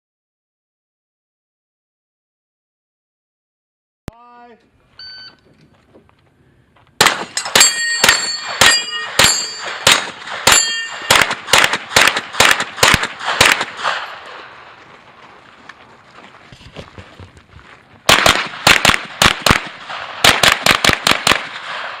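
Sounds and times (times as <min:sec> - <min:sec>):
pistol shots: 0:07.0 - 0:14.6, 0:18.1 - 0:22.0
steel targets clanging: 0:07.2 - 0:11.2.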